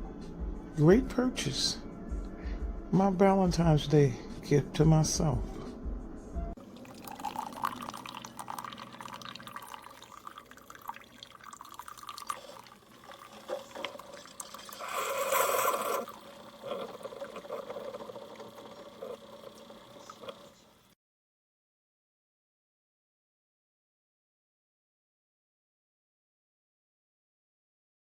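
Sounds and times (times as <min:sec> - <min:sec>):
coffee maker dispensing into cup: 0:06.6 - 0:20.9
coffee maker hiss: 0:06.6 - 0:21.0.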